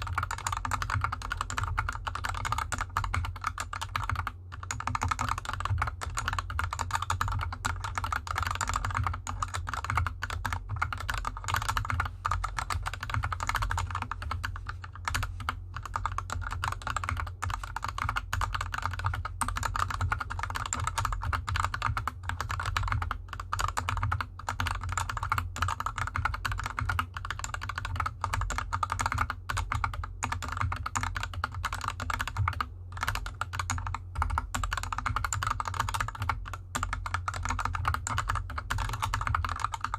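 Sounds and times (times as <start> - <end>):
fast typing on mechanical keyboard: 0.0 - 39.9
steady low hum: 0.0 - 39.9.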